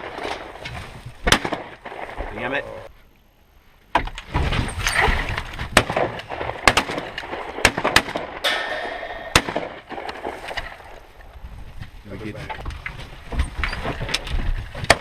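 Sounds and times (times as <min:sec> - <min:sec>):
wind noise: 0:00.0 - 0:03.0, 0:04.1 - 0:07.6, 0:08.4 - 0:15.0
shotgun shots: 0:01.2 - 0:02.6, 0:05.7 - 0:10.6.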